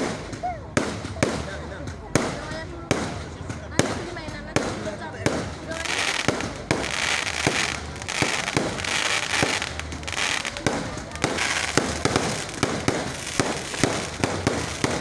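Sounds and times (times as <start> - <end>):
fireworks bangs: 0.0 - 15.0
crackling hiss: 5.5 - 15.0.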